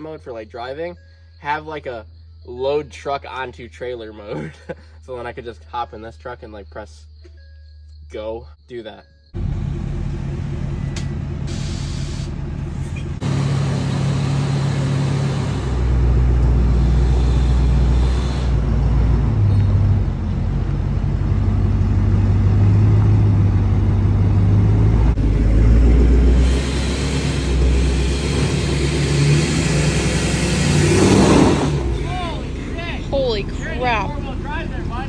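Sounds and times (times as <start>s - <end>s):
truck engine rumbling: 9.2s - 35.0s.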